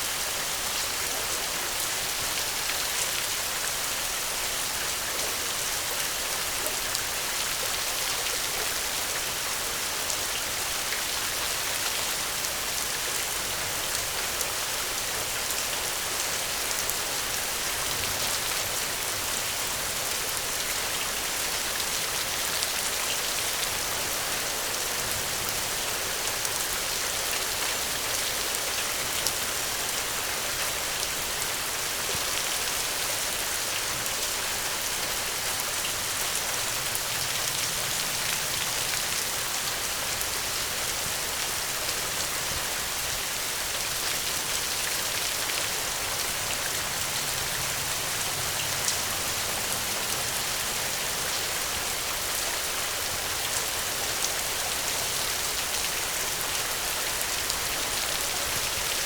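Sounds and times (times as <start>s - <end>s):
rain falling on a surface: 0.0s - 59.0s.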